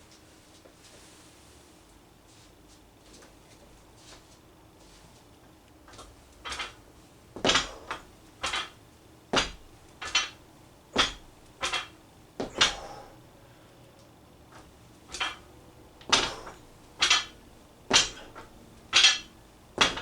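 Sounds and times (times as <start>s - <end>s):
barbell clanking: 9.4s - 10.4s, 11.0s - 13.2s, 14.6s - 20.0s.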